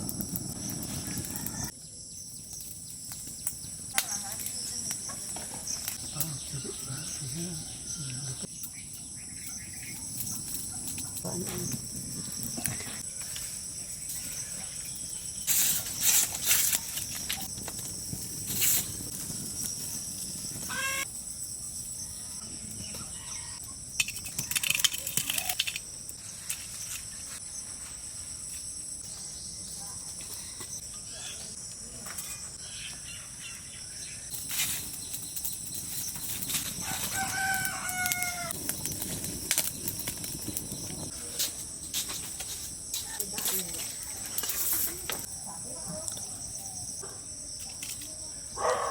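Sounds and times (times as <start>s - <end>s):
rooster crowing: 1.0s - 1.7s, 36.8s - 38.6s.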